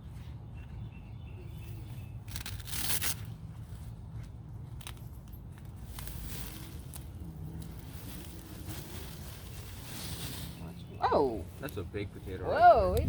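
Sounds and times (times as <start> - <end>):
soil pouring and sliding: 5.9 - 11.0.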